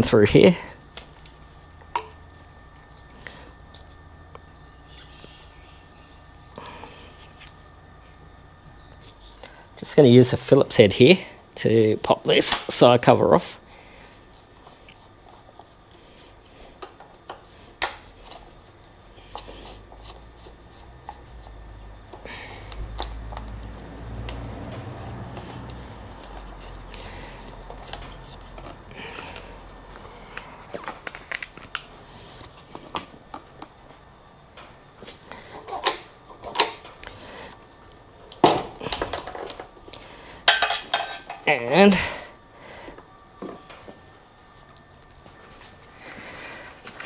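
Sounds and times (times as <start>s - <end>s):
hand tools clicking and knocking: 40.5s - 41.5s.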